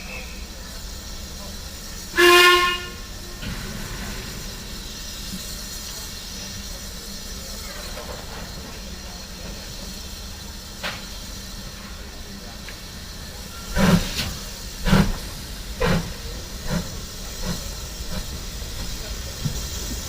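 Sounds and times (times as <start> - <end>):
steam engine hiss and rumble: 0.0 - 20.0
steam locomotive whistle: 2.1 - 3.4.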